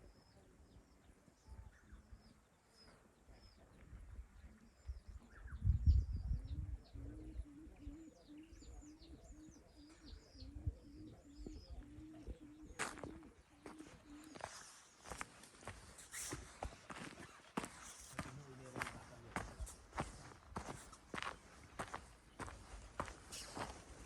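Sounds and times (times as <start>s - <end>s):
small birds chirping: 0.0s - 24.0s
dove cooing: 6.7s - 14.6s.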